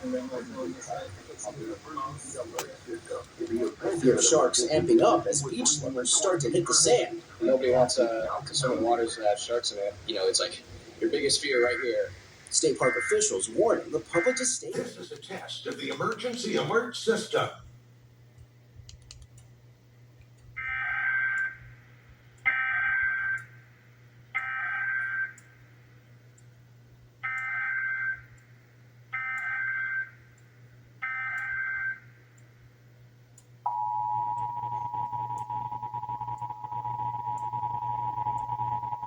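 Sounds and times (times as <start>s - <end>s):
two-tone attention signal: 33.7s - 39.0s
screechy digital data bursts: 34.1s - 39.0s.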